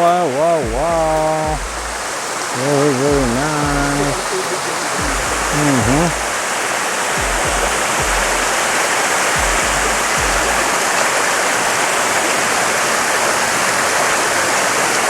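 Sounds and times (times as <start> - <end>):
waterfall rushing and splashing: 0.0 - 15.0
low thumps: 0.6 - 2.2, 3.1 - 4.3, 5.0 - 6.3, 7.2 - 8.7, 9.4 - 10.7.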